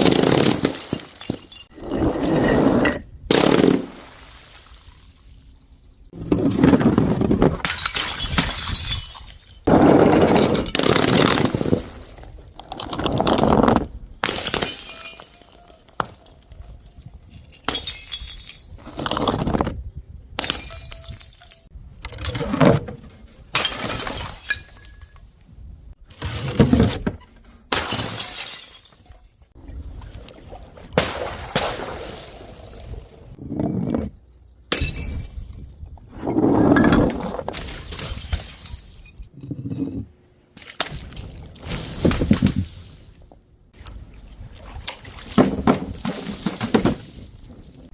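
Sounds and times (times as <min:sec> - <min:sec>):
glass bottles smashing: 0:00.1 - 0:01.8, 0:07.6 - 0:12.3, 0:14.2 - 0:18.8, 0:20.4 - 0:21.7, 0:23.5 - 0:25.3, 0:27.7 - 0:29.2, 0:34.7 - 0:35.8, 0:37.5 - 0:39.4.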